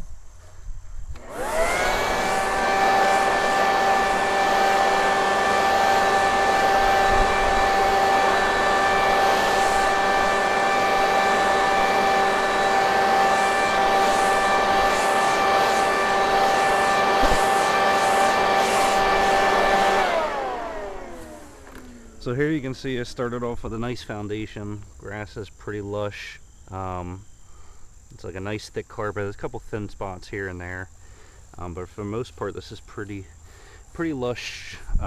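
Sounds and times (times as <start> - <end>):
rushing air: 1.1 - 22.4
electric blower motor whining: 1.1 - 24.1.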